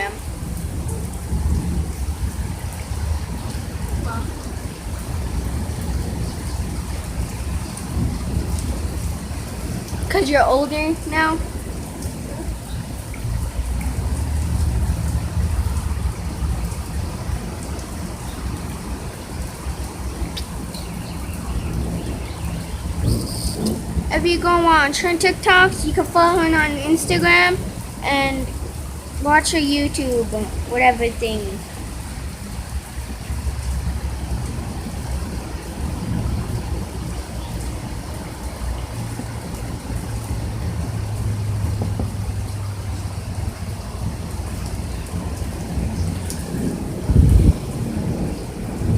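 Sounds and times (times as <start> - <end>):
heavy rain pouring: 0.0 - 48.9.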